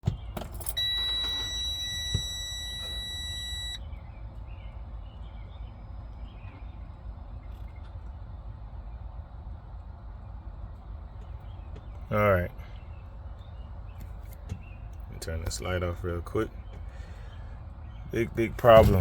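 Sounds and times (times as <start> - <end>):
low steady rumble: 0.2 - 19.0
electronic warning buzzer: 0.7 - 3.8.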